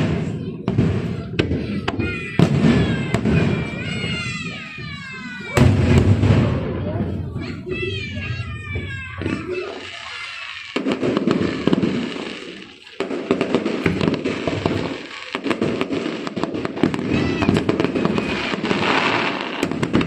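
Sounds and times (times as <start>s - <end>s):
fireworks cracking and popping: 0.0s - 20.0s.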